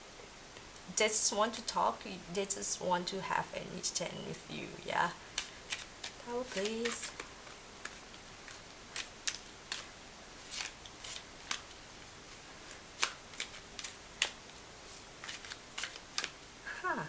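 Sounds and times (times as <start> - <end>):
cards being shuffled: 5.3 - 16.4.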